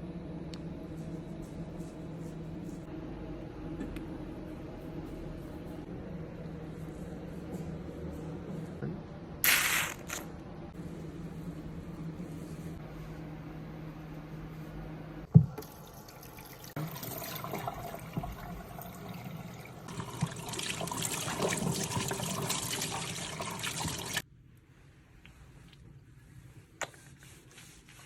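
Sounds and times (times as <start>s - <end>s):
water running and splashing: 15.8s - 24.2s.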